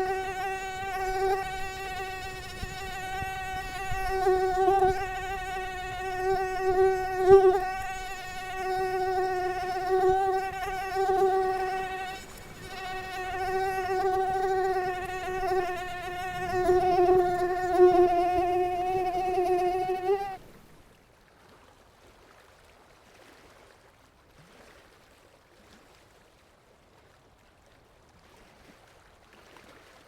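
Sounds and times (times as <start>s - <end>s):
mosquito wings whining: 0.0s - 20.6s.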